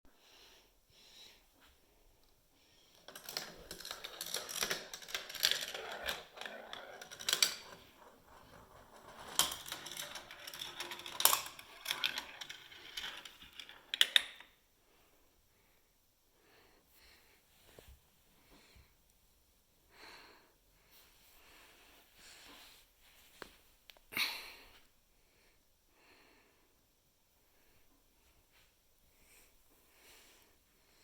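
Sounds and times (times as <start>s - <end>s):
marbles rattling down plastic run: 3.0s - 14.4s.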